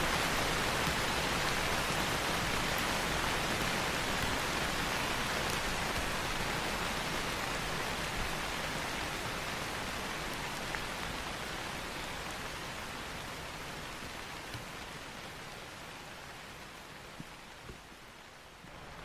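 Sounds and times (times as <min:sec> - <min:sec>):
steady rain hiss: 0:00.0 - 0:19.0.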